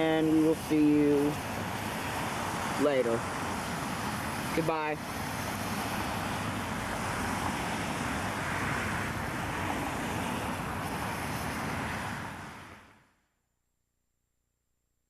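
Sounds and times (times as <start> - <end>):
traffic on a wet road: 0.0 - 13.1.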